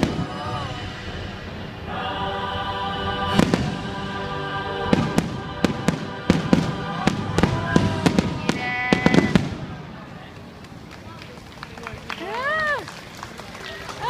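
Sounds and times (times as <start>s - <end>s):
fireworks bangs and crackles: 0.0s - 0.7s, 3.3s - 3.8s, 4.9s - 10.9s
music playing: 0.0s - 8.6s.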